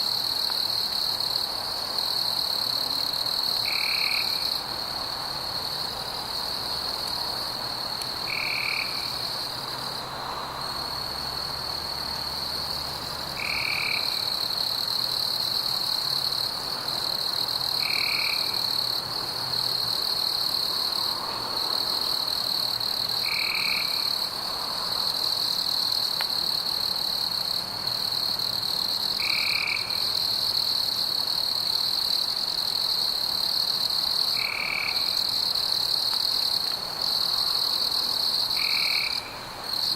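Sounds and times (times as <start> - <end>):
high-pitched insect trill: 0.0 - 9.7, 10.5 - 39.9.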